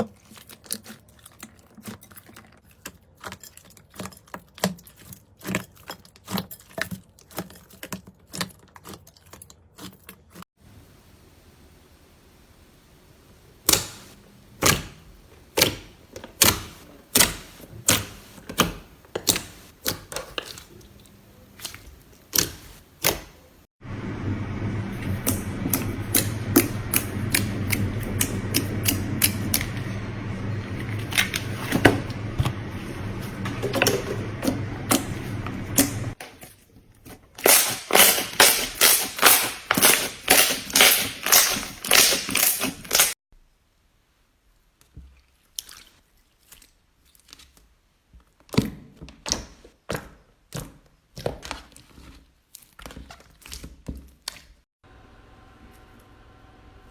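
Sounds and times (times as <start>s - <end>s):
low hum and hiss: 10.6s - 15.5s, 23.5s - 36.2s.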